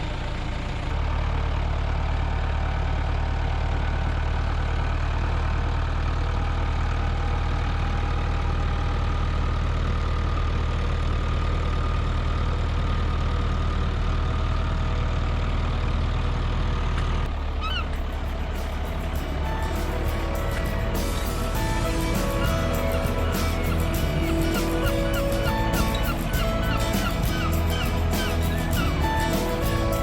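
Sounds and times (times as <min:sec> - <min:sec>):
boat engine humming: 0:17.2 - 0:30.0
short rising chirps: 0:17.6 - 0:30.0.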